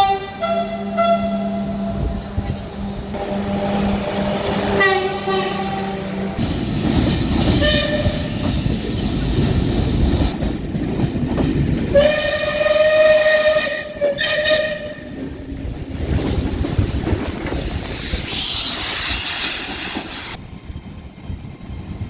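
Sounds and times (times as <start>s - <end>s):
train horn blasts: 0.0s - 2.2s, 3.2s - 6.4s, 7.5s - 8.4s, 11.9s - 15.2s
rumble of passing train: 0.0s - 22.0s.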